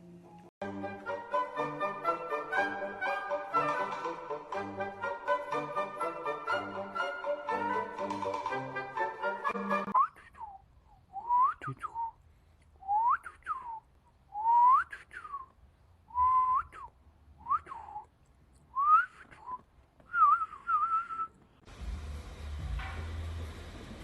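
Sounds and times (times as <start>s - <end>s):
long wavering whistle: 9.4s - 12.1s, 12.8s - 15.4s, 16.1s - 18.0s, 20.1s - 21.3s
short gliding whistles: 9.9s - 12.2s, 12.8s - 18.1s, 18.7s - 21.4s.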